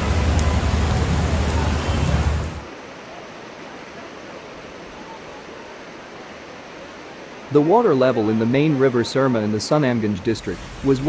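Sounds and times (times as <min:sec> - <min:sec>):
low rumbling noise: 0:00.0 - 0:02.7
floodwater rushing: 0:00.0 - 0:11.0.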